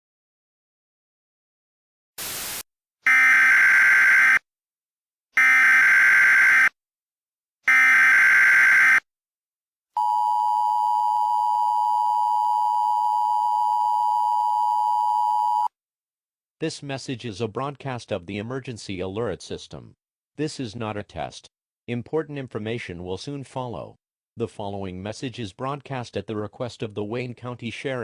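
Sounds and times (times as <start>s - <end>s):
digital data screeches: 2.2s - 2.6s
static burst: 2.2s - 2.7s.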